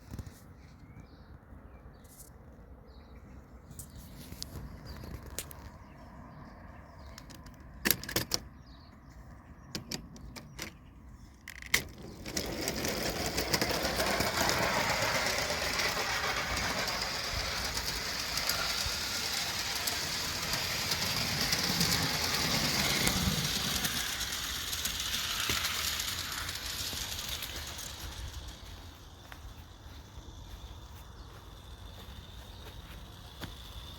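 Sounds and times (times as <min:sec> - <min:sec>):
model machine whirring and rattling: 0:11.5 - 0:33.9.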